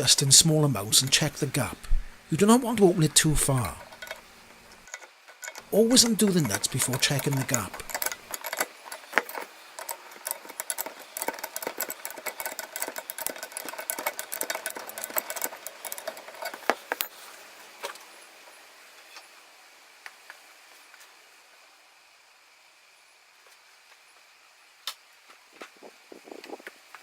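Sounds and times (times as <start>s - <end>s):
hand tools clicking: 2.4s - 17.1s.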